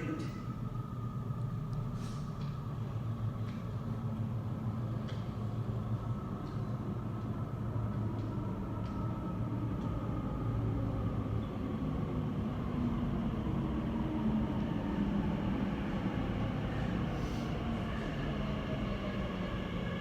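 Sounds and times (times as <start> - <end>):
electric train rumble: 0.0 - 20.0.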